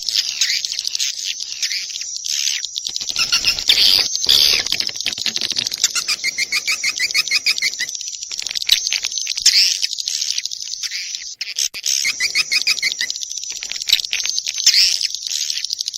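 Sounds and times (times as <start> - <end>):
swiftlet chirps and twittering: 0.0 - 15.9
rapid clicks: 2.9 - 9.1.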